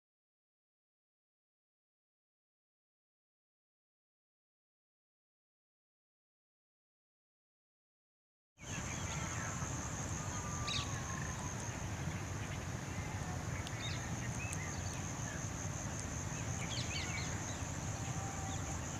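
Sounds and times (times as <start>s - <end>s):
high-pitched insect drone: 8.6s - 11.8s, 14.7s - 18.9s
small birds chirping: 8.6s - 18.9s.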